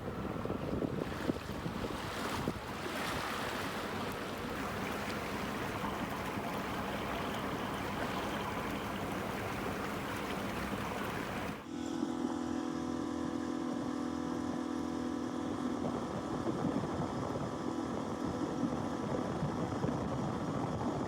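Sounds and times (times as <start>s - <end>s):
wind buffeting microphone: 0.0s - 11.6s
water rushing along a hull: 0.0s - 11.7s
low motor hum: 0.0s - 19.4s.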